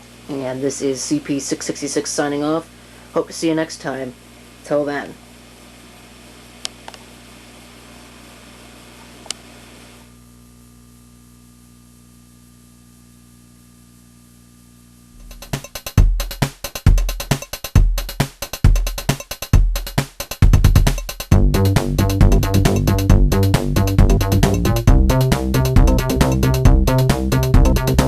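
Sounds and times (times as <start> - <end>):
electronic music with kick drum: 15.2 - 28.0.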